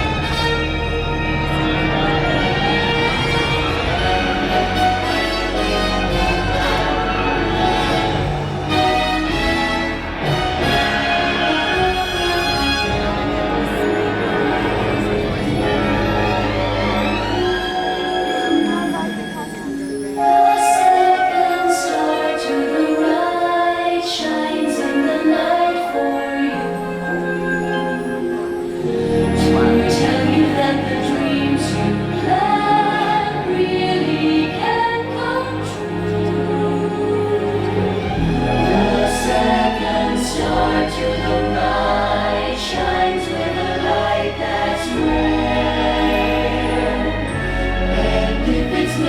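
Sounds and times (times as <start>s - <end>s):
deep sustained bass: 0.0s - 19.1s
choir singing held notes: 0.0s - 49.0s
people singing with accompaniment: 28.8s - 49.0s.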